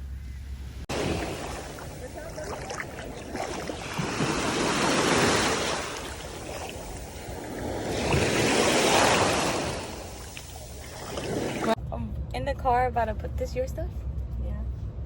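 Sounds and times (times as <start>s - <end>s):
ocean waves on beach: 0.9s - 11.8s.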